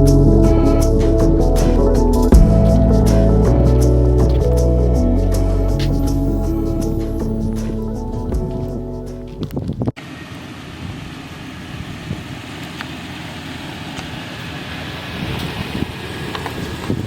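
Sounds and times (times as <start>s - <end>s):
background music: 0.0s - 9.5s
vehicle rumble and hiss: 10.0s - 17.0s.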